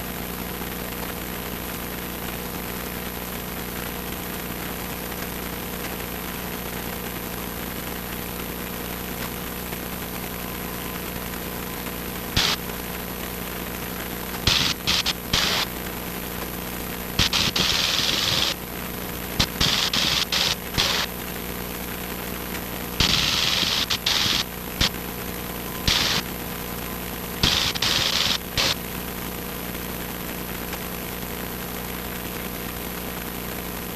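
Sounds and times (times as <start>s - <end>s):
bursts of loud hiss: 12.3s - 12.8s, 14.3s - 15.8s, 17.1s - 18.6s, 19.3s - 21.3s, 22.9s - 25.2s, 25.8s - 26.5s, 27.4s - 28.8s.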